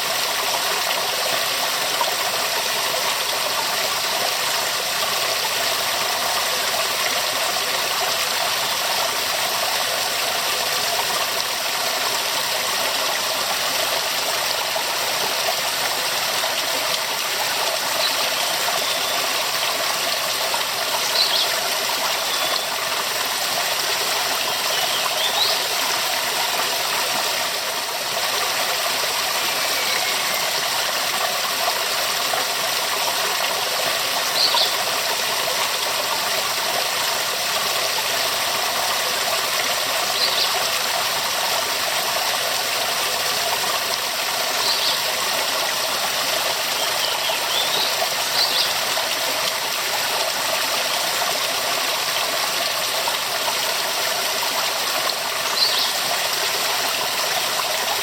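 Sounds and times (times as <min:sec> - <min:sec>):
waterfall rushing: 0:01.9 - 0:33.4.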